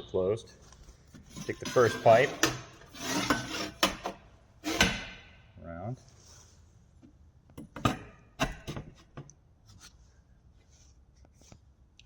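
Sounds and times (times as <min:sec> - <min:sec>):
metal scraping: 0:00.5 - 0:05.3.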